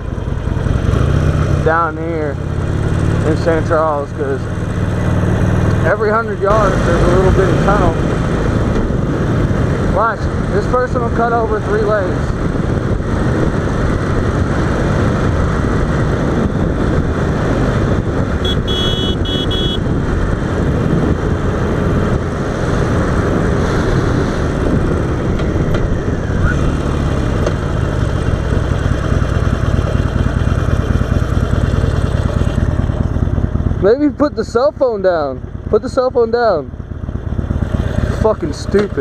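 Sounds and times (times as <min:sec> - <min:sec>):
motorcycle engine running: 0:00.0 - 0:39.0
wind rush on microphone: 0:06.5 - 0:30.8.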